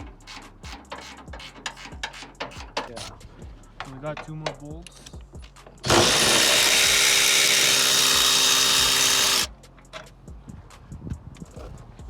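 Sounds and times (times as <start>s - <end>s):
power drill spinning: 5.8s - 9.5s.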